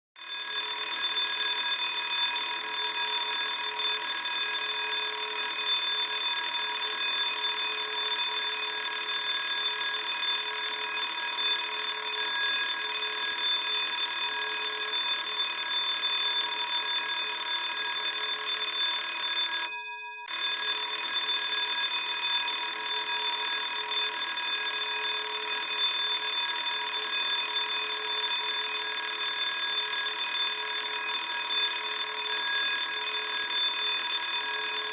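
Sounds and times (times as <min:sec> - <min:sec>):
electric school bell ringing: 0:00.2 - 0:34.9.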